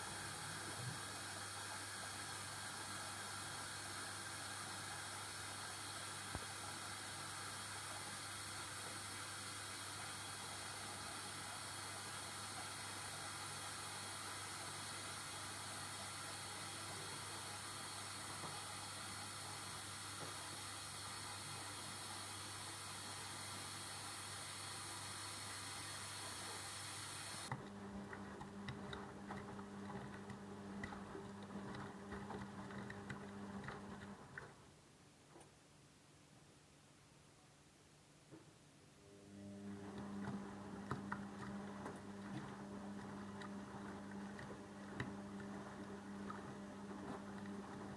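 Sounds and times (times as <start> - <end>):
washing machine hissing: 0.0 - 27.5.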